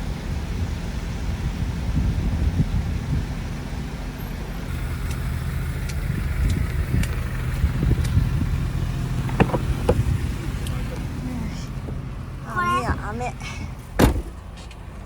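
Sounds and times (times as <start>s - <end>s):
camper van engine running: 0.0s - 15.0s
sharp ticks: 4.7s - 8.3s.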